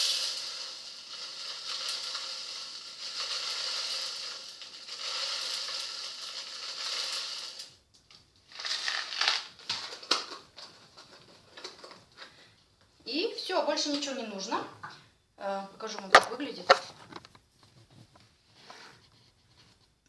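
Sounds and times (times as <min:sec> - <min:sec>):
sugar crystals pouring from packet: 0:00.0 - 0:07.8, 0:08.5 - 0:10.3
sharp clicks and taps: 0:16.0 - 0:17.4.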